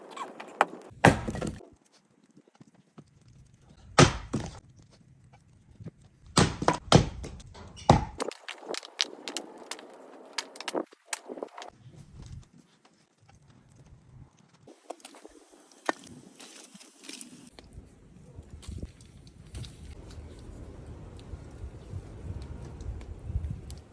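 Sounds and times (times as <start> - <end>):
axe splitting firewood: 0.6 - 1.6, 3.8 - 4.6, 6.3 - 8.4
wood knocking and clicking: 4.0 - 4.6, 6.4 - 8.2.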